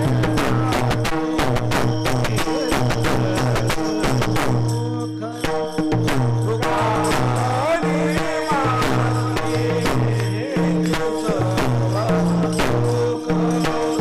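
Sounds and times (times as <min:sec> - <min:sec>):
person singing: 0:00.0 - 0:01.6, 0:06.4 - 0:14.0
held low drone notes: 0:00.0 - 0:14.0
jingling hand percussion: 0:00.0 - 0:14.0.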